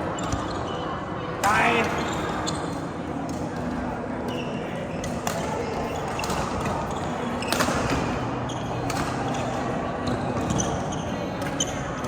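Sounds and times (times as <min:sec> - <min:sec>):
steady background noise: 0:00.0 - 0:12.0
racket striking shuttlecock: 0:07.5 - 0:08.1.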